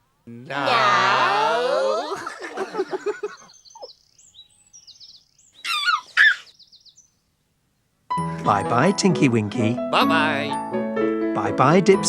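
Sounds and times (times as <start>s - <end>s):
birds chirping: 0.7s - 7.9s
bird calls sweeping downward: 3.2s - 7.1s.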